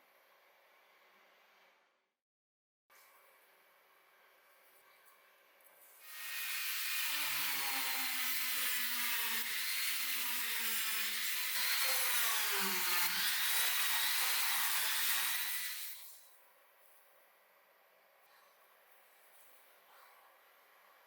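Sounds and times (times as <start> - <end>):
small electric power tool whining: 6.0 - 16.2.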